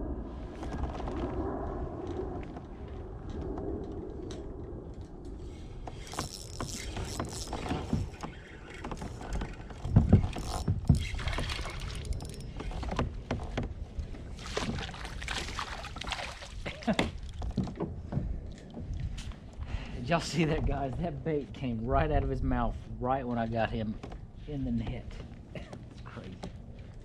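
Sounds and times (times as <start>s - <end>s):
water splashing against kayak: 5.9s - 19.6s.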